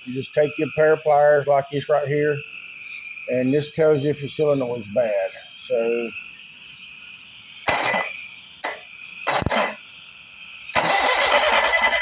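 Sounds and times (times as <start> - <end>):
frogs or insects calling: 0.0 - 12.0
bursts of electrical noise: 7.6 - 9.9.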